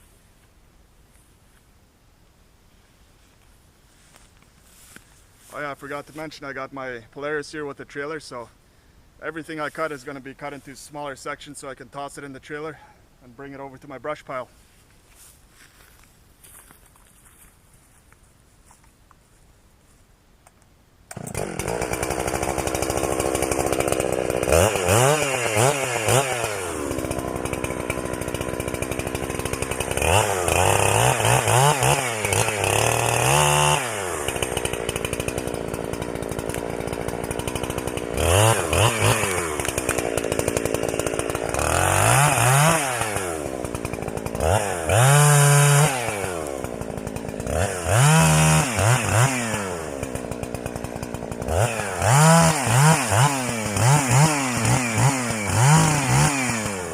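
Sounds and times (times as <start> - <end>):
chainsaw revving: 21.1 - 56.9.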